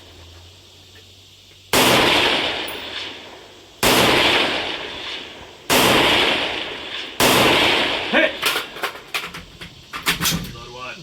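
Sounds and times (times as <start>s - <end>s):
rifle gunshots: 1.7s - 9.1s.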